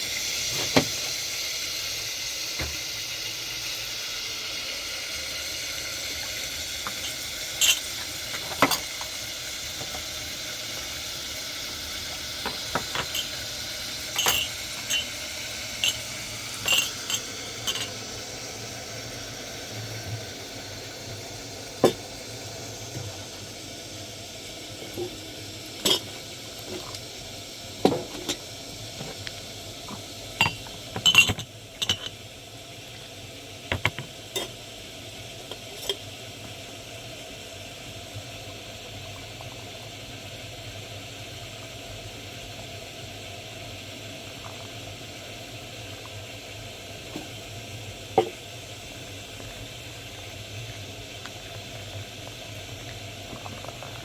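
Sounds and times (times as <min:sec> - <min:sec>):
sizzling hiss: 0:00.0 - 0:54.0
pots and dishes clinking: 0:00.5 - 0:01.2, 0:06.8 - 0:10.2, 0:12.1 - 0:18.0, 0:21.8 - 0:22.1, 0:24.8 - 0:25.2, 0:25.8 - 0:27.0, 0:27.8 - 0:32.2, 0:33.7 - 0:34.6, 0:35.4 - 0:36.1, 0:48.1 - 0:48.4.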